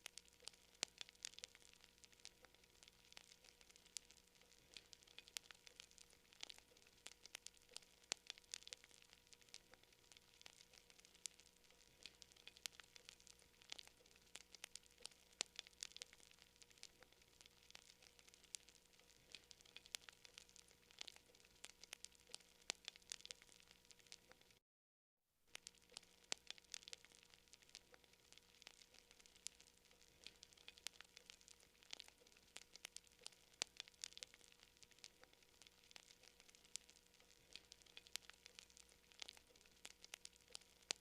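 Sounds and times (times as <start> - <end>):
campfire crackling: 0.0 - 24.6, 25.5 - 41.0.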